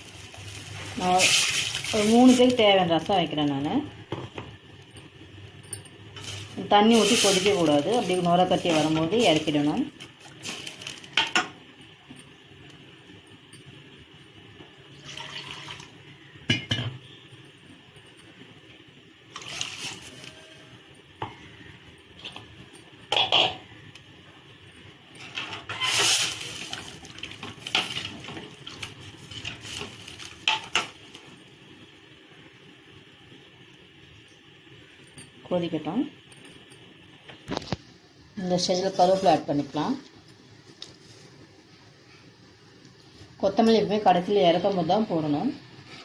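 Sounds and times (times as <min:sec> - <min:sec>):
utensils clinking against pot: 0:10.4 - 0:11.6, 0:22.2 - 0:23.6, 0:25.1 - 0:31.0.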